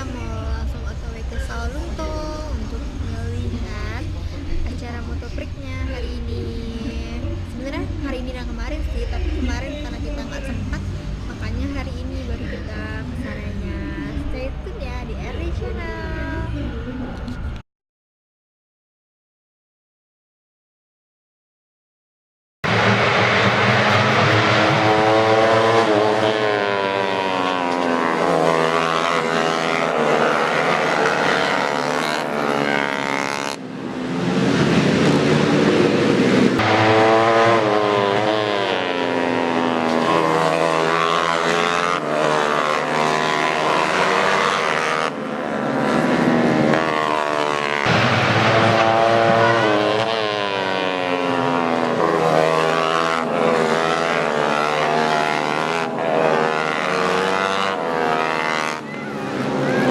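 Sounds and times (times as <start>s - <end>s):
racing motorcycles at full throttle: 0.0s - 17.6s, 22.6s - 59.9s.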